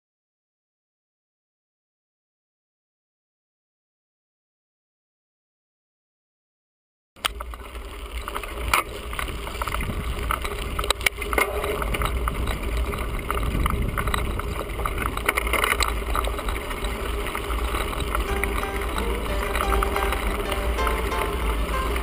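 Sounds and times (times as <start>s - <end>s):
bicycle tyres rattling on dirt: 7.2s - 22.0s
wind rumble on microphone: 9.1s - 18.3s.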